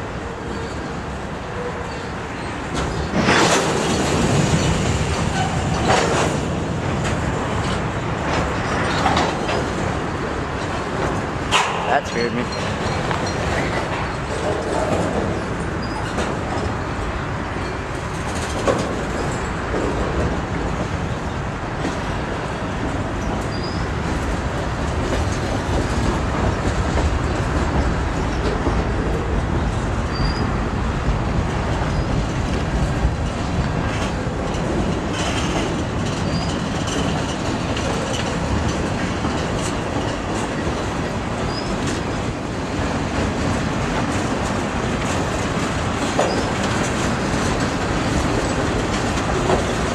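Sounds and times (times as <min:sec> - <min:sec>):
freight train rumbling past: 0:00.0 - 0:49.9
wheels clicking over rail joints: 0:01.8 - 0:49.9.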